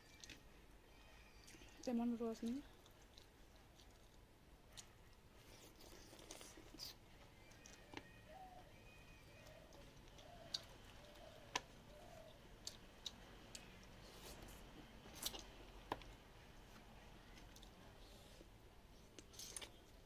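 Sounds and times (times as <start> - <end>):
chewing clicks and smacks: 0.1 - 0.5, 1.4 - 8.1, 9.4 - 16.2.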